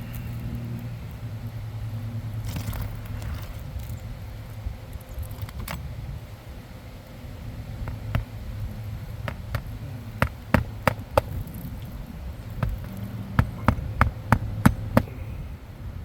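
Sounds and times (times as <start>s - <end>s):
steady low rumble: 0.0s - 16.0s
sharp knocks and clicks: 7.8s - 11.7s, 12.6s - 15.1s.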